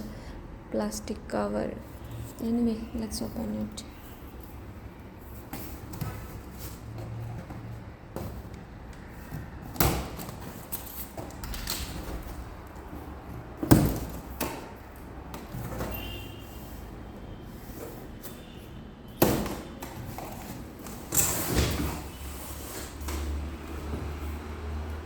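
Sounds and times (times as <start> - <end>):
cardboard rustling and scraping: 4.2 - 11.4, 19.8 - 24.8.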